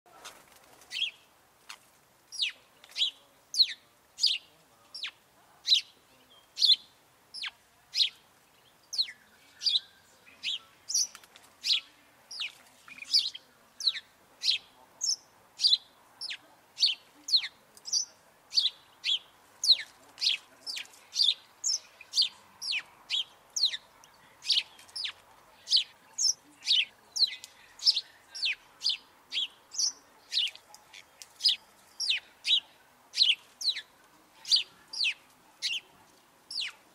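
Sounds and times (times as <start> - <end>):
sparrows chirping: 0.9 - 36.9.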